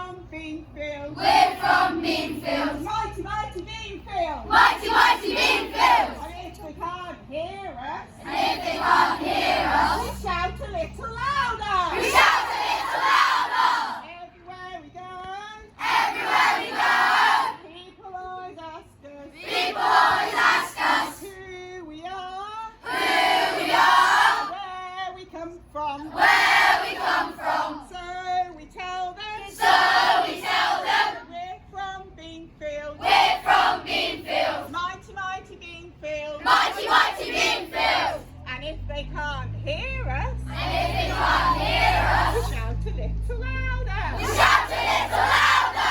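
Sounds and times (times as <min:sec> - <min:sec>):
group of children shouting: 0:12.0 - 0:14.1, 0:44.2 - 0:45.9.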